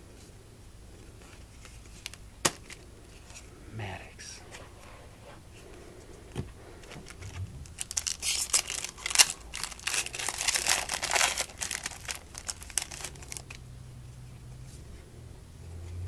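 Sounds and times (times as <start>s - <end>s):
card pack wrapper crinkling: 7.0s - 13.6s.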